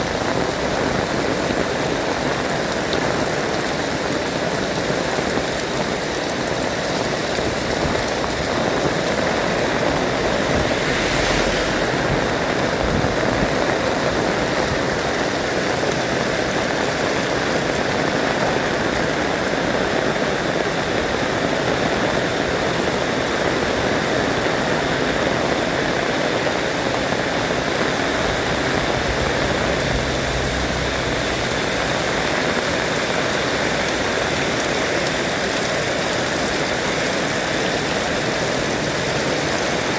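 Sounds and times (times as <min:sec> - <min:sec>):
heavy rain falling: 0:00.0 - 0:39.9
strong wind: 0:06.0 - 0:17.4, 0:21.8 - 0:36.9.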